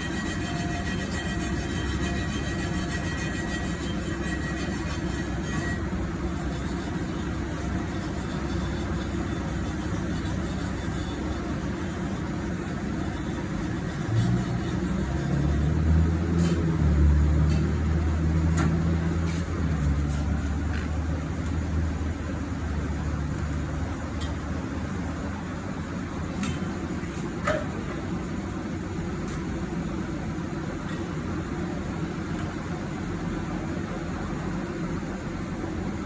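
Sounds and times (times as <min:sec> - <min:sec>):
steady background noise: 0:00.0 - 0:36.0.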